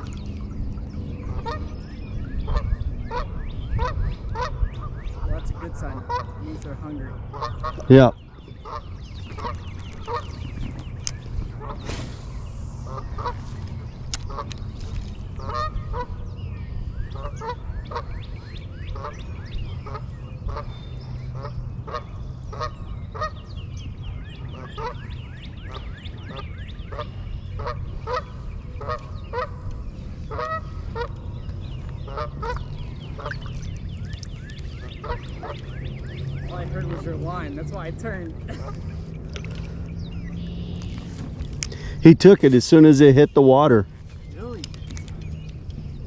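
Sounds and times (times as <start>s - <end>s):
steady low rumble: 0.0s - 46.0s
geese honking: 2.5s - 6.4s, 7.2s - 7.9s, 8.6s - 10.4s, 15.4s - 16.2s, 18.9s - 19.2s, 25.7s - 29.6s, 30.2s - 31.3s, 32.0s - 33.5s, 34.6s - 37.9s.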